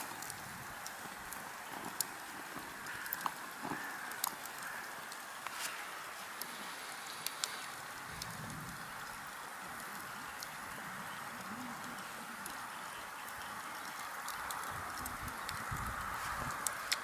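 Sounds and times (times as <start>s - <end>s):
campfire crackling: 0.0s - 17.0s.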